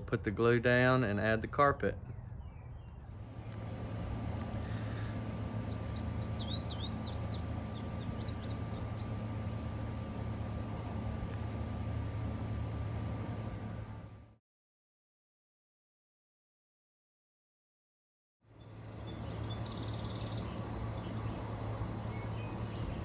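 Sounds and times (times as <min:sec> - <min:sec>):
low background hum: 0:00.0 - 0:14.4, 0:18.5 - 0:23.0
bird twittering: 0:04.6 - 0:09.5, 0:18.7 - 0:21.3.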